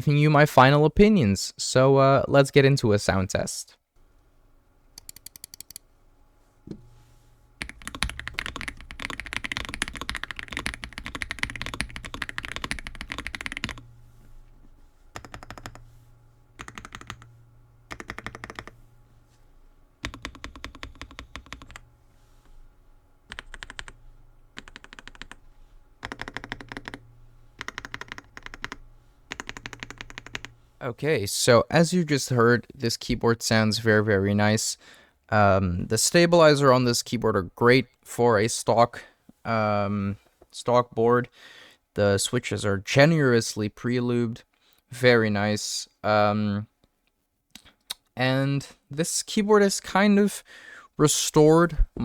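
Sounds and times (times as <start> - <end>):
typing on mechanical keyboard: 7.6 - 13.8, 15.1 - 15.8, 16.6 - 17.3, 17.9 - 18.8, 20.0 - 21.8, 23.3 - 24.0, 24.6 - 25.4, 26.0 - 27.0, 27.6 - 30.6.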